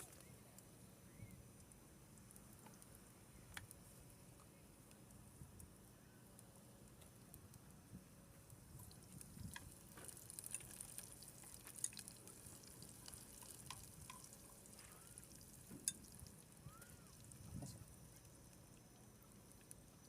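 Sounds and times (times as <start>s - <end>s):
food sizzling on charcoal grill: 8.4s - 18.6s.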